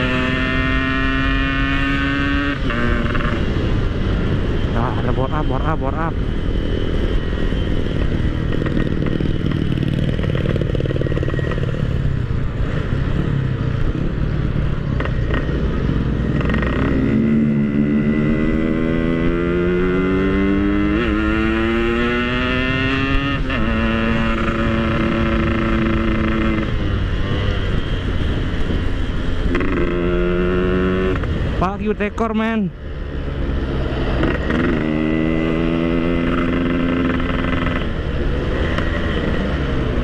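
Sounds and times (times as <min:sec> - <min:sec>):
two-stroke motorcycle engine: 0:00.0 - 0:40.0
wind and road noise: 0:00.0 - 0:40.0.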